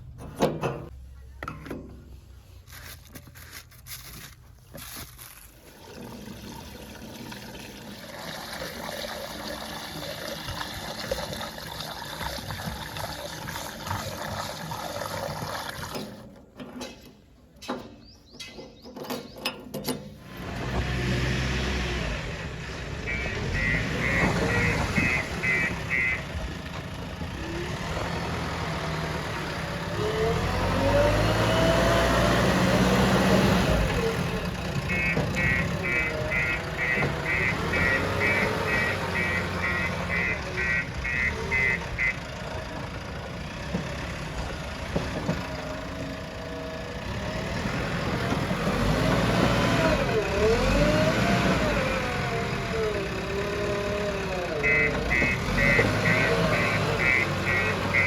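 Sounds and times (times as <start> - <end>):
diesel engine running: 20.2 - 58.0.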